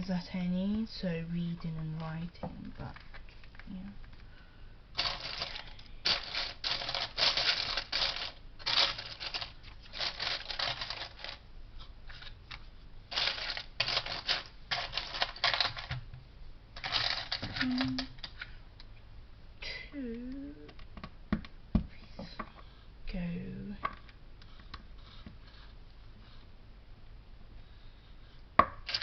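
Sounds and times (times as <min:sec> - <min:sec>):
plastic pieces clattering: 0:05.0 - 0:11.4, 0:13.1 - 0:16.0, 0:16.8 - 0:18.3.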